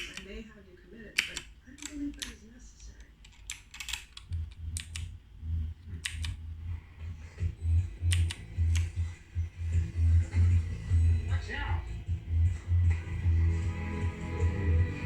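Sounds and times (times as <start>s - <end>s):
mechanical keyboard clicks: 0.0s - 0.4s, 1.1s - 5.1s, 6.0s - 6.4s, 8.0s - 9.0s
low pulsing rumble: 4.2s - 15.0s.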